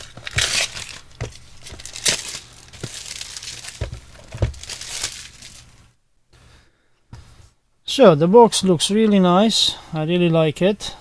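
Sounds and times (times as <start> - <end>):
box knocks: 0.0 - 5.6
packaging crinkling and tearing: 0.0 - 5.9.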